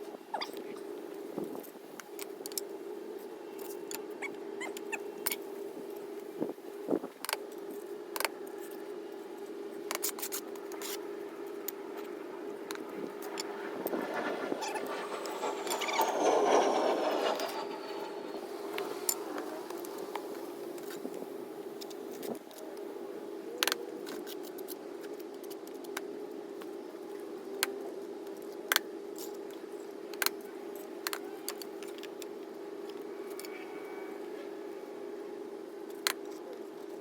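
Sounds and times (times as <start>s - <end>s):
steady hum: 10.5s - 23.3s.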